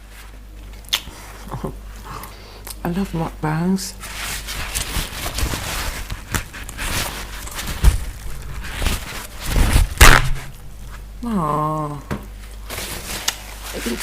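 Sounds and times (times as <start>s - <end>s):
close chewing and mouth noises: 0.6s - 2.8s
loud sharp noise: 9.7s - 10.5s.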